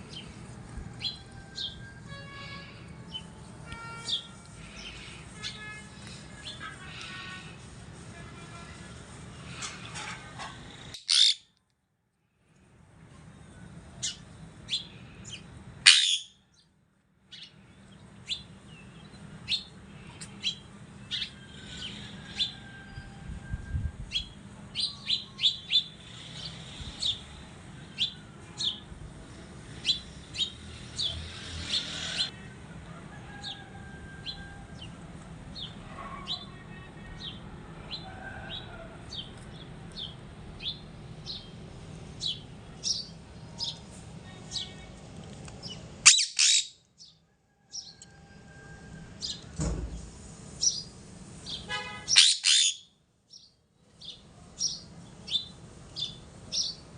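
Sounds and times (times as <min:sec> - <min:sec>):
parrot chirping: 0:10.9 - 0:11.5, 0:15.8 - 0:16.4, 0:46.0 - 0:46.8, 0:52.1 - 0:52.9
parrot squawk: 0:10.9 - 0:11.5, 0:15.8 - 0:16.4, 0:46.0 - 0:46.8, 0:52.1 - 0:52.9.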